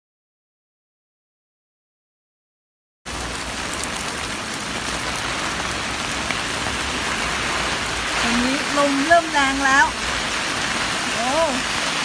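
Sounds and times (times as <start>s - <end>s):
heavy rain and wind: 3.1s - 12.0s.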